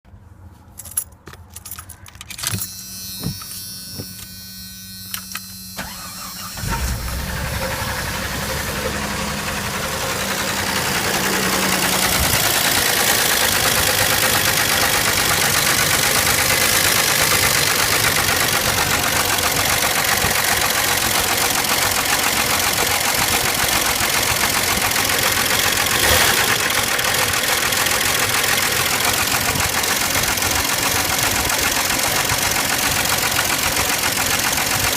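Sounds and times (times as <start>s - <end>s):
car engine running with knock: 6.9s - 34.9s.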